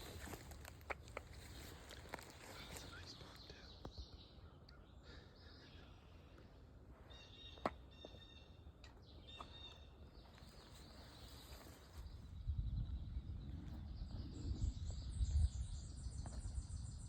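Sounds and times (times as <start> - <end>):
high-pitched bird calls: 7.0 - 12.0.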